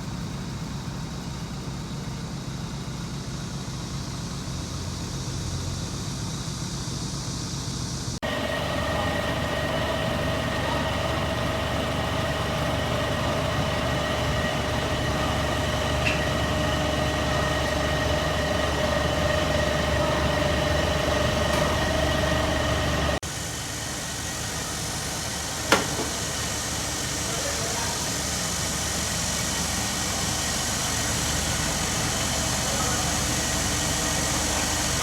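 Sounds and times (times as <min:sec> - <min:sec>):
machinery whine: 0:04.8 - 0:35.0
harvester engine rumble: 0:08.2 - 0:35.0.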